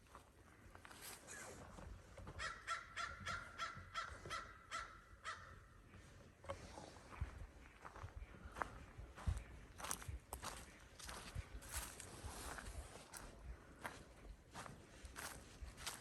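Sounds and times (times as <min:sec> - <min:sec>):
soft footsteps on trail: 0:00.0 - 0:02.5, 0:05.8 - 0:16.0.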